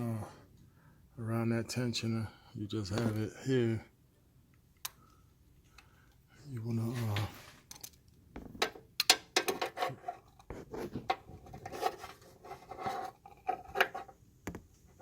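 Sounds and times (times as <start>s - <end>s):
rubbing and scraping: 9.4s - 14.2s.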